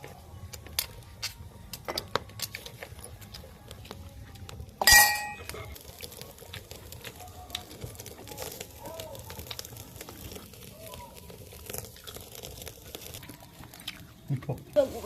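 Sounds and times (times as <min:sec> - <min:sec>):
loud ringing dish clink: 0:04.8 - 0:05.5
dishes and cutlery clinking: 0:04.8 - 0:05.6.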